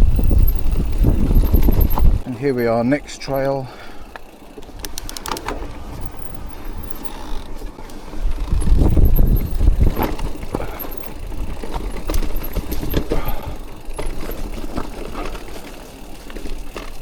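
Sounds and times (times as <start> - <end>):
bike rattling and knocking: 0.0 - 17.0
bike tyres rolling: 0.0 - 17.0.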